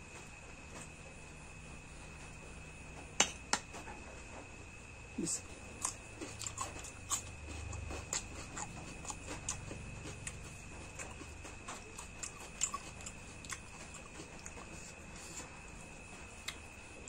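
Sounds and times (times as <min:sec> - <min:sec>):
person chewing food: 0:05.4 - 0:17.0.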